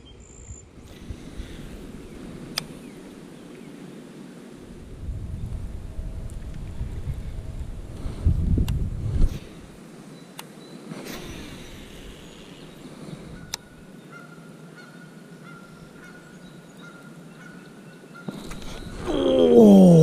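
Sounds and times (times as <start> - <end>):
man whooping excitedly: 19.1 - 20.0.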